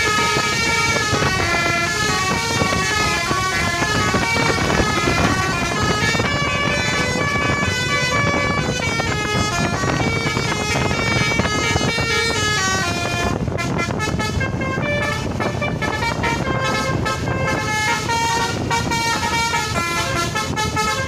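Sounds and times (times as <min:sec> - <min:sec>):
bus horns playing melodic runs: 0:00.0 - 0:21.0
engine and road rumble: 0:00.0 - 0:21.0.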